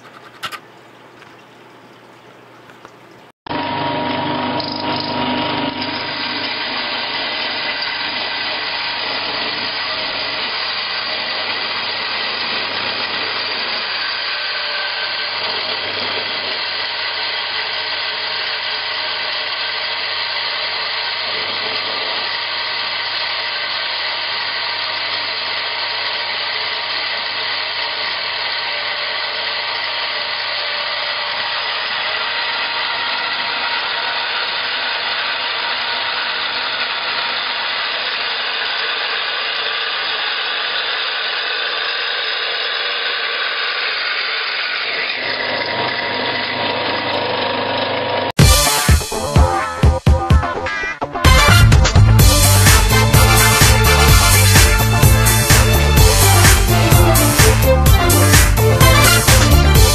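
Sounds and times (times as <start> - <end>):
electric coffee grinder whirring: 3.5 - 49.7, 51.2 - 59.9.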